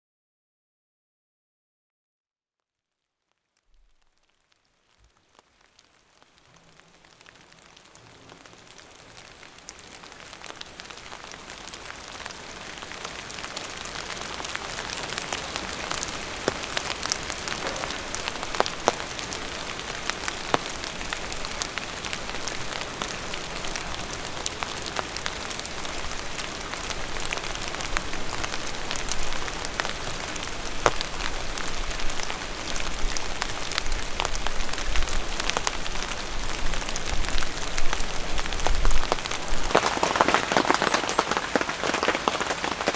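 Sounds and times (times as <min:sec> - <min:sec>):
steady rain falling: 0:03.7 - 0:42.9
louder raindrops striking: 0:03.8 - 0:42.9.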